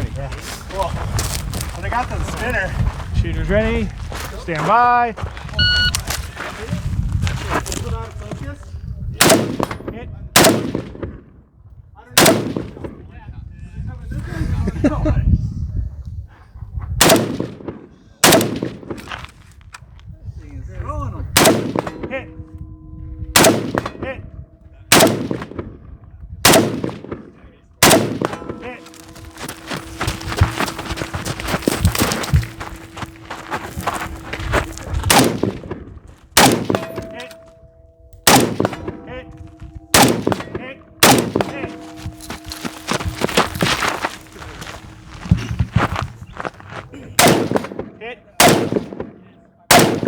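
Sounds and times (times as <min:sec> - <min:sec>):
gunshots with short echo: 0:09.2 - 0:09.8, 0:10.4 - 0:11.2, 0:12.2 - 0:13.0, 0:17.0 - 0:19.1, 0:21.4 - 0:22.3, 0:23.4 - 0:24.2, 0:24.9 - 0:25.8, 0:26.4 - 0:30.6, 0:34.6 - 0:37.5, 0:38.2 - 0:43.6, 0:47.2 - 0:50.0
steel targets ringing: 0:21.3 - 0:25.8, 0:26.6 - 0:46.3.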